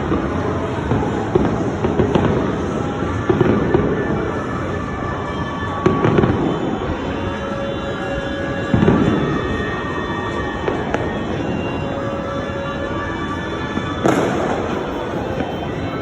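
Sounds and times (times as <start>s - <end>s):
fireworks and firecrackers crackling: 0.0s - 16.0s
sharp loud firework bangs: 14.0s - 16.0s.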